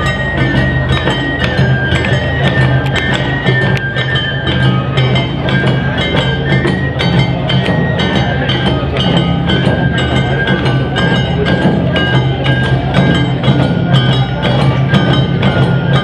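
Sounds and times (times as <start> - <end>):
bamboo flute melody: 0.0 - 16.0
drums beating: 0.0 - 16.0
hand gongs clanging: 0.0 - 16.0.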